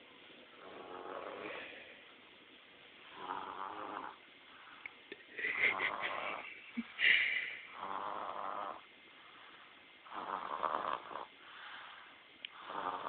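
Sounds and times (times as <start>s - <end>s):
baby snoring: 0.6s - 1.7s, 3.1s - 4.2s, 7.7s - 8.8s, 10.1s - 11.3s, 12.6s - 13.0s.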